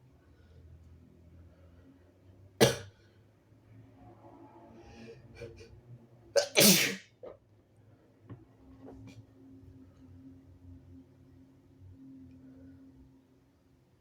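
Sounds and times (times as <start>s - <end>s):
person sneezing: 6.4s - 7.1s.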